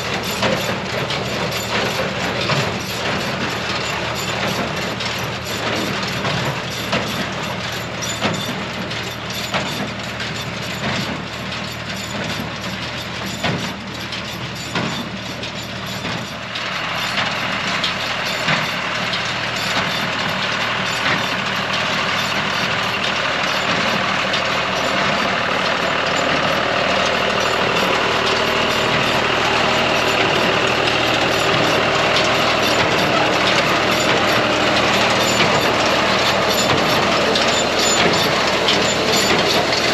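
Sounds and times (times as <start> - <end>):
tractor engine running: 0.0 - 39.9
baler mechanism knocking: 22.2 - 39.9.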